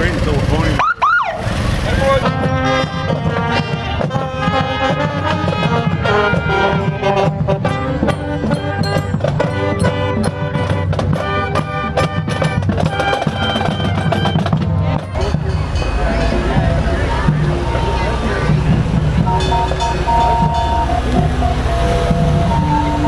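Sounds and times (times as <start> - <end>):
busy drum beat: 1.9 - 23.0
pitched instruments playing: 1.9 - 23.0.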